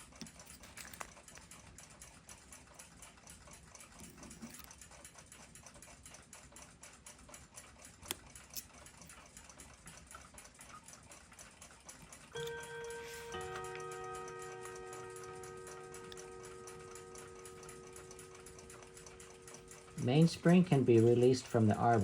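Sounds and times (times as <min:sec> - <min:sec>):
clock ticking: 0:09.3 - 0:22.0.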